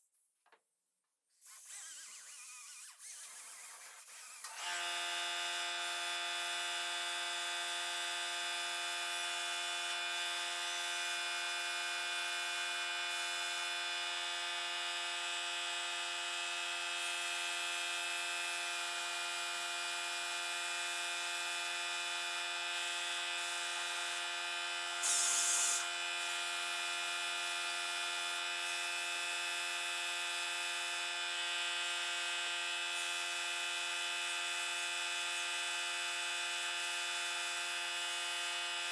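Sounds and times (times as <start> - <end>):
power tool motor whining: 1.4 - 5.1
brief hiss: 25.0 - 25.8.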